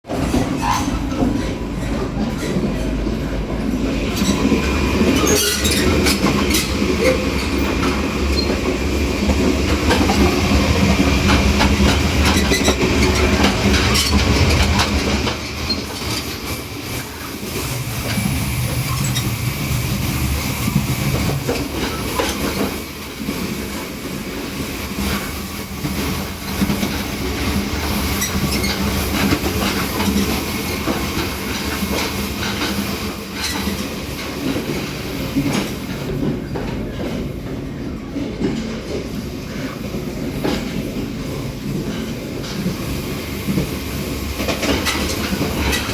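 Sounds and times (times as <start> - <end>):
train rumble: 0.0 - 45.9
rail-joint clatter: 0.1 - 45.9
wheel squeal: 5.1 - 7.7.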